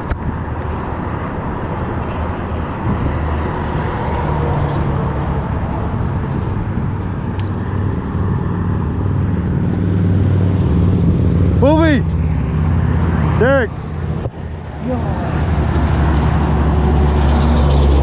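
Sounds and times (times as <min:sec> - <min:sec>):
traffic rumble: 0:00.0 - 0:18.0.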